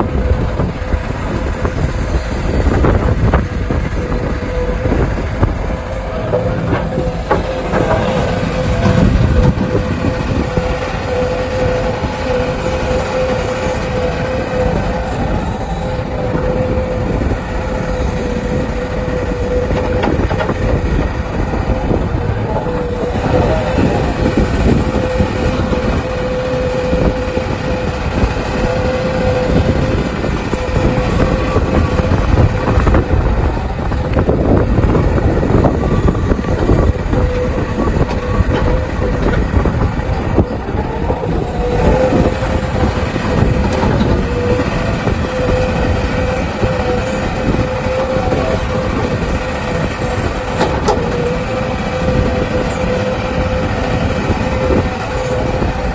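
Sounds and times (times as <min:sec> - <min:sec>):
excavator engine and hydraulics: 0:00.0 - 0:55.9
metal clanks and rattles: 0:05.4 - 0:10.6.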